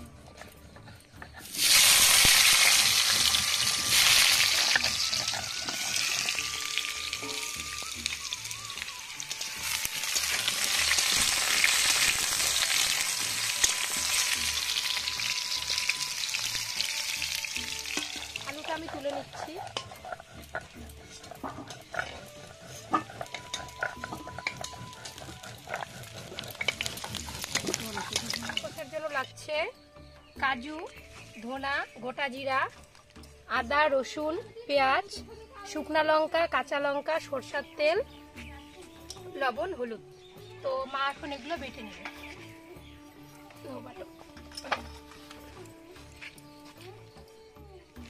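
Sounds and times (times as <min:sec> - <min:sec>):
metal spoon clinking and scraping pan: 0:01.3 - 0:07.6, 0:17.6 - 0:28.8
potatoes sizzling in hot oil: 0:01.4 - 0:29.2.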